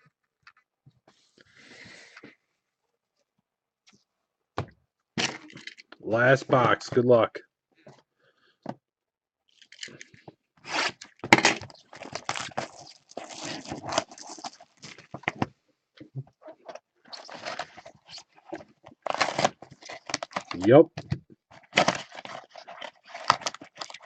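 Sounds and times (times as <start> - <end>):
cardboard and wrapping tearing: 10.6 - 15.2, 17.1 - 20.7, 21.6 - 24.0.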